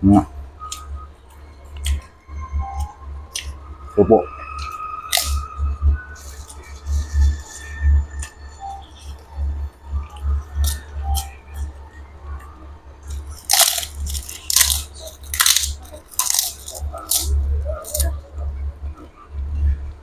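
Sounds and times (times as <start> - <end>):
crackers crunching: 4.6 - 5.4, 10.2 - 11.3, 13.0 - 18.2.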